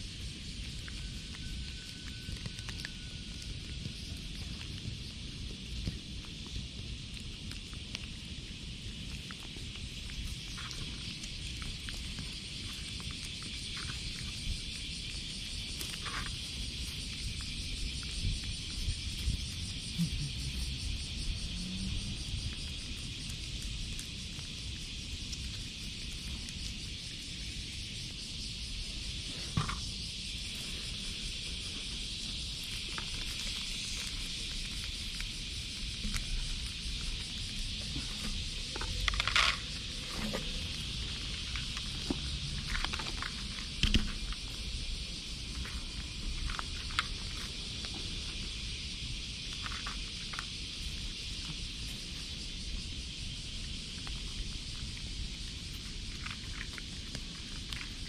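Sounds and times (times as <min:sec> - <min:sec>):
high outdoor hiss: 0:00.0 - 0:58.0
cat crunching dry food: 0:00.1 - 0:19.5, 0:22.5 - 0:27.7, 0:31.4 - 0:44.9, 0:54.0 - 0:58.0.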